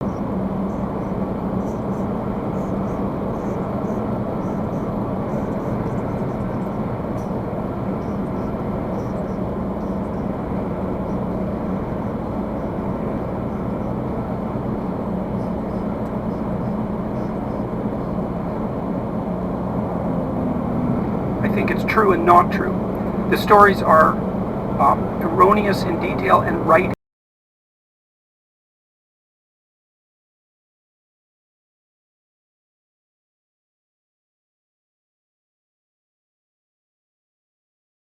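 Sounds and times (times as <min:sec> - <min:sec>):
diesel truck engine hum: 0:00.0 - 0:27.0
road noise: 0:00.0 - 0:27.0.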